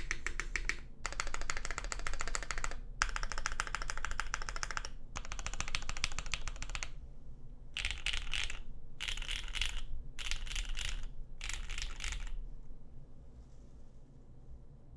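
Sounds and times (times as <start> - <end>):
mechanical keyboard typing: 0.0 - 7.0, 7.8 - 12.4.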